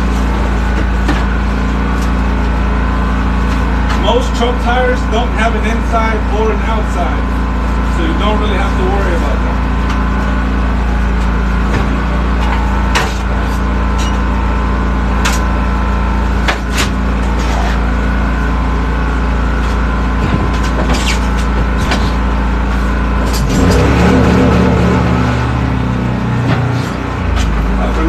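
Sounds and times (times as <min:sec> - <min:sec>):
tire knocking and clanking: 0:00.0 - 0:02.7, 0:11.1 - 0:18.8, 0:19.4 - 0:28.0
engine drone: 0:00.0 - 0:28.0.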